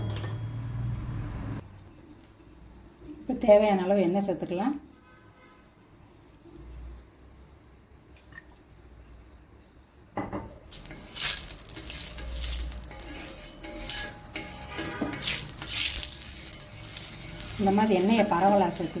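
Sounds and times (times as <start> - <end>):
oil sizzling on hot griddle: 10.7 - 19.0.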